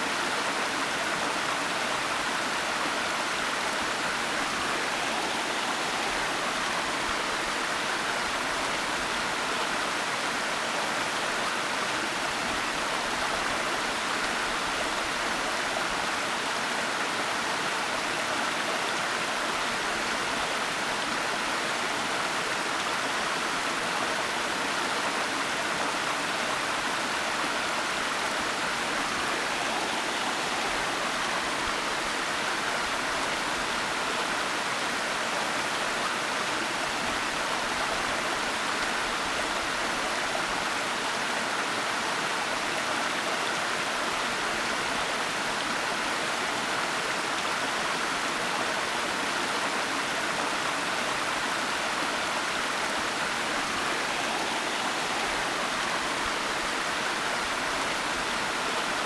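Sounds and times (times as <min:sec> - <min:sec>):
waterfall rushing: 0:02.2 - 0:08.8, 0:26.4 - 0:35.2, 0:49.3 - 0:59.0.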